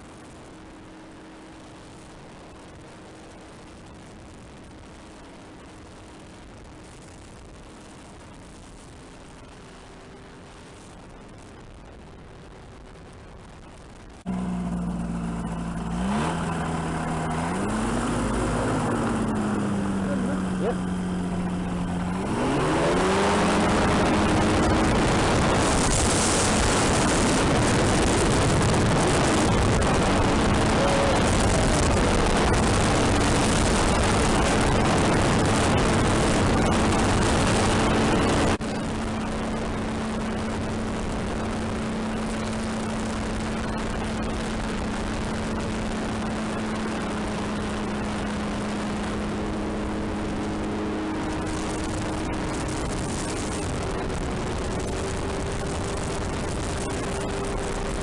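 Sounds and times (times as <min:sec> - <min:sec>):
loud rushing noise: 0:14.1 - 0:41.8.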